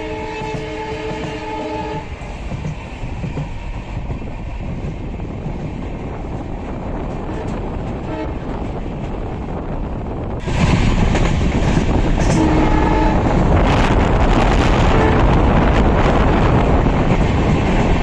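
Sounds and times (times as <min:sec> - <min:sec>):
locomotive horn chord: 0:00.0 - 0:02.1, 0:12.2 - 0:13.4
train wheels rumbling on rail: 0:00.0 - 0:18.0.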